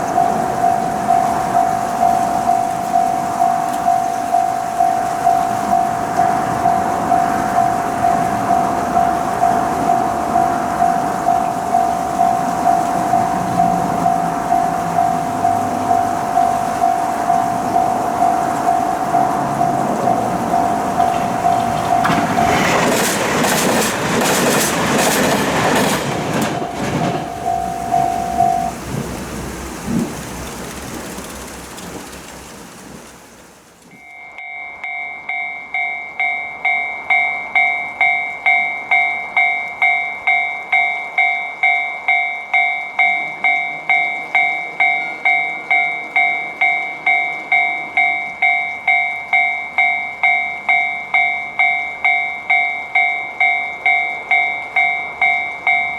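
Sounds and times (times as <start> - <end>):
steady tone: 0.0 - 29.7
level crossing warning bell: 0.0 - 31.4, 33.9 - 55.9
train wheels clattering: 0.0 - 33.2.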